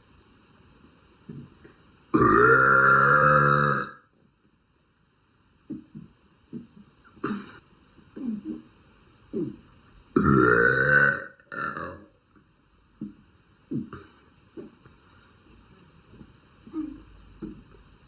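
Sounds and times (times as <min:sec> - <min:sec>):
girl burping: 0:02.2 - 0:04.0, 0:10.2 - 0:12.0
short throat sounds: 0:05.7 - 0:07.6, 0:08.2 - 0:10.8, 0:13.0 - 0:14.8, 0:16.6 - 0:17.8.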